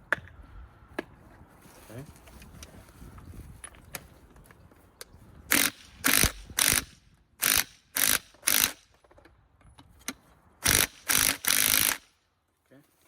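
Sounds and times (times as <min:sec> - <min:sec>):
ratchet wrench clicking: 0:05.5 - 0:08.8, 0:10.6 - 0:12.0.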